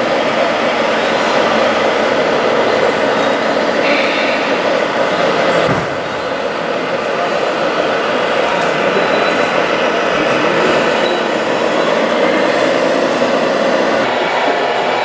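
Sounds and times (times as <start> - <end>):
high whine: 0.0 - 8.2.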